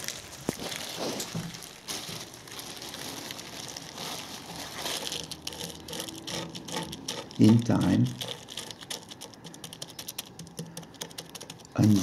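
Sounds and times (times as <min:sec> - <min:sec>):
small stones crackling and clicking: 0:04.6 - 0:12.0.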